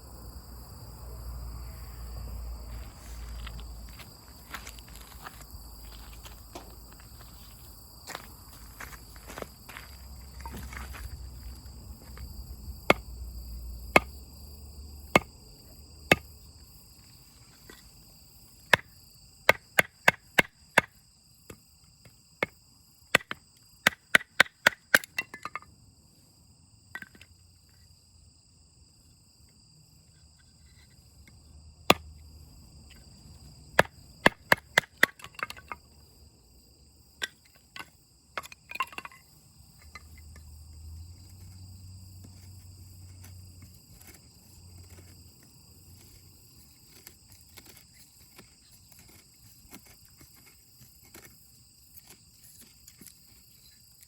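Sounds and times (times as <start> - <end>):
insects chirring: 0.0 - 54.0
firewood being chopped: 12.8 - 13.2, 13.9 - 14.2, 15.0 - 15.4, 16.1 - 16.3, 18.6 - 21.6, 22.4 - 25.6, 31.8 - 32.2, 33.7 - 35.8, 46.9 - 53.2.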